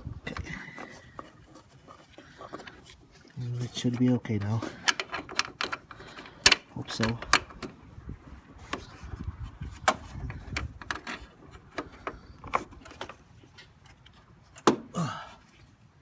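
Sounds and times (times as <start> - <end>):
car hood latch clicks: 14.6 - 14.9.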